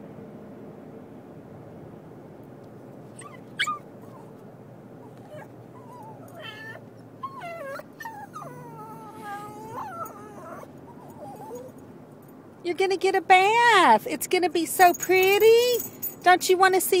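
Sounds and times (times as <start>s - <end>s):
dog whining and whimpering: 3.2s - 4.4s, 5.0s - 11.8s
dog yelping: 3.2s - 4.4s, 5.0s - 11.8s.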